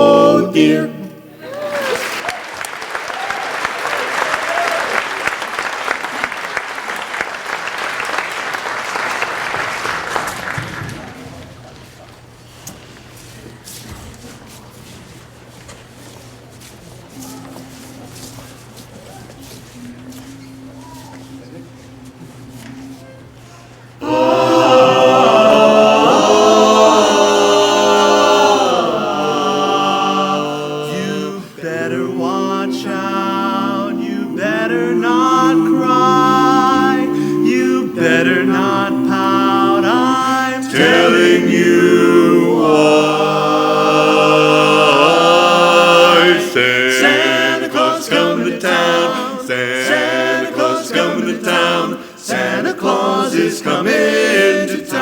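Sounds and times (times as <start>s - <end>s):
barbershop a cappella singing: 0.0s - 1.4s, 24.0s - 55.0s.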